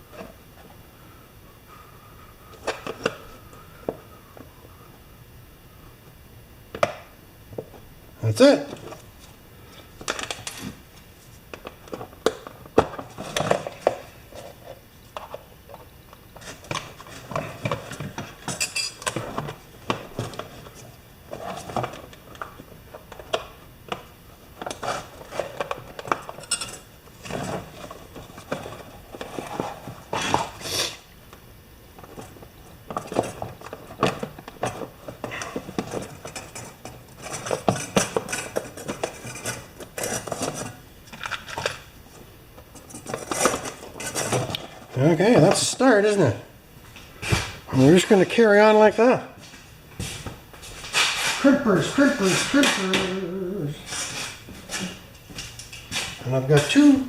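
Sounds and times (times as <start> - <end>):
metal tools clinking and rattling: 18.5 - 19.2, 26.3 - 26.9.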